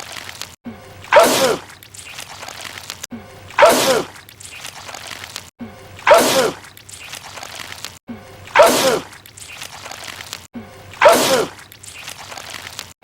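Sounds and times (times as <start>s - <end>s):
man sneezing: 6.1s - 6.6s, 8.6s - 9.1s, 11.0s - 11.6s.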